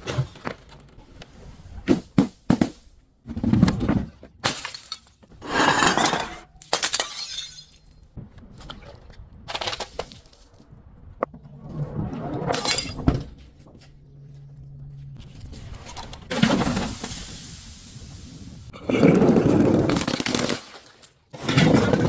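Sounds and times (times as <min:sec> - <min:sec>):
glass bottles shattering: 0:04.4 - 0:08.2.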